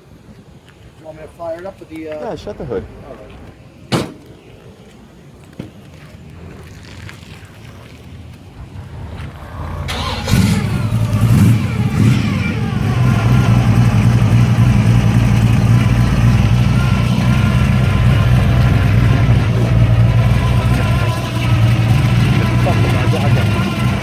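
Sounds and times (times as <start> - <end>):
car engine starting and idling: 8.4 - 24.0.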